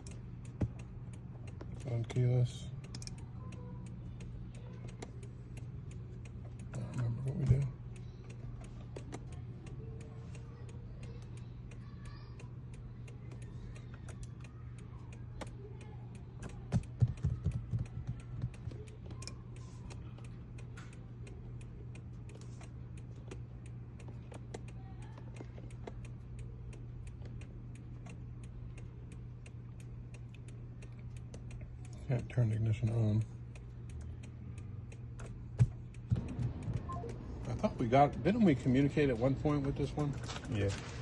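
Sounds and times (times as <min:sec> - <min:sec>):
low hum: 0:33.2 - 0:41.0.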